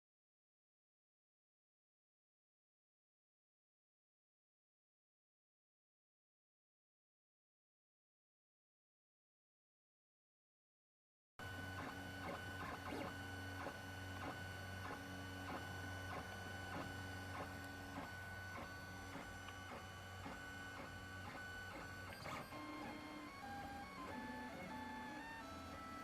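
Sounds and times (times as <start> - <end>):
motor whining tones: 11.4 - 26.0
stepper motor hum: 11.4 - 26.0.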